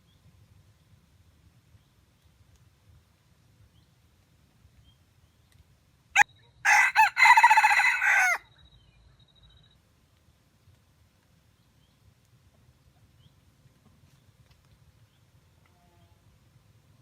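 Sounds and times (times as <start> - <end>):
rooster crowing: 6.6 - 8.4.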